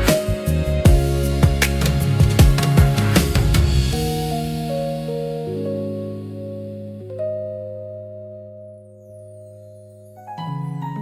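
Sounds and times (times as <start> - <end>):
steady drum beat: 0.0 - 5.1
held synth chords: 0.0 - 10.2.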